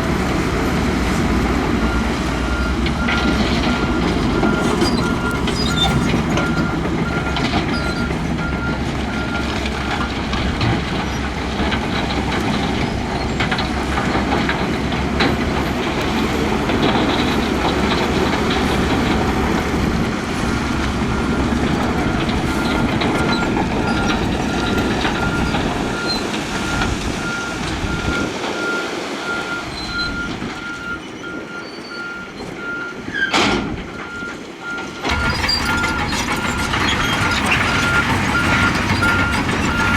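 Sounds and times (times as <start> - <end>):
heavy diesel machine engine running: 0.0 - 31.6, 34.0 - 39.9
reversing alarm beeps: 21.1 - 33.1.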